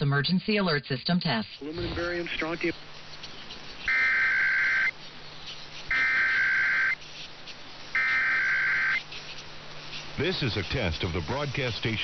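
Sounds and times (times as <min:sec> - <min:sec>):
warbling two-tone digital data bursts: 0:03.9 - 0:04.9, 0:05.9 - 0:07.0, 0:07.9 - 0:09.0.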